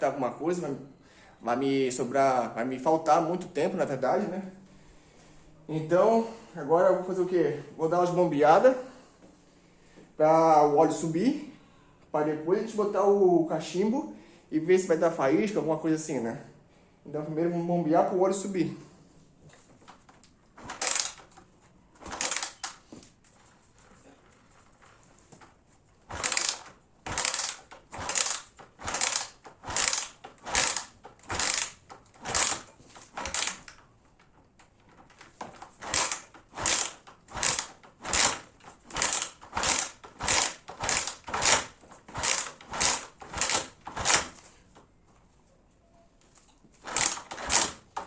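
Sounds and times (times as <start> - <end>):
engine turning over: 20.6 - 21.3, 22.0 - 22.8, 26.1 - 33.7, 35.4 - 44.4, 46.8 - 48.0.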